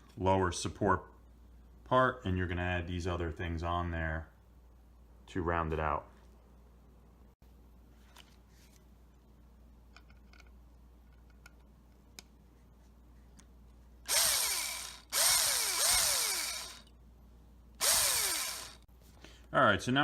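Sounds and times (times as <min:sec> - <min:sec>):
cordless drill driving screws: 0:14.1 - 0:16.9, 0:17.8 - 0:18.9.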